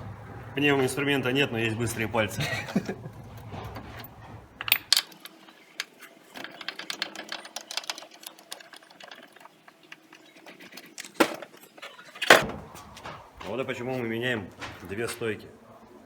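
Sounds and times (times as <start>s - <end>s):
metal knocks: 14.3s - 15.4s.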